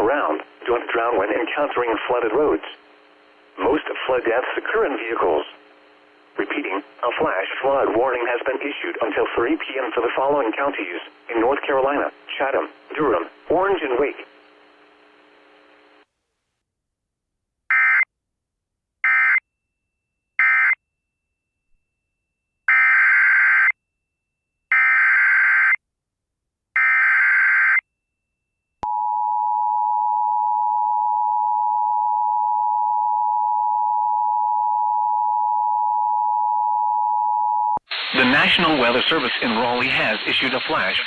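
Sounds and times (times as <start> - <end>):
harsh digital warble bursts: 37.9 - 41.0.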